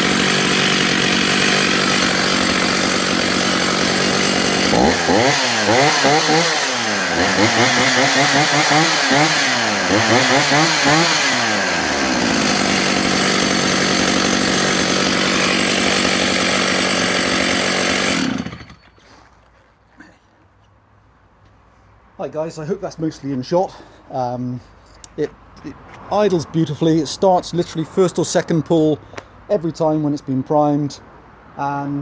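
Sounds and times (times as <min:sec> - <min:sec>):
chainsaw engine idling and revving: 0:00.0 - 0:18.9.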